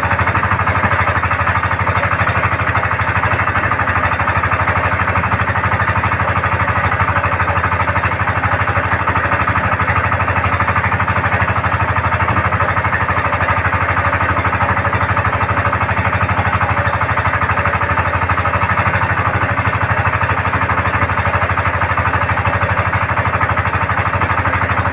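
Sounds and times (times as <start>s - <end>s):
small boat engine chugging: 0.0s - 24.9s.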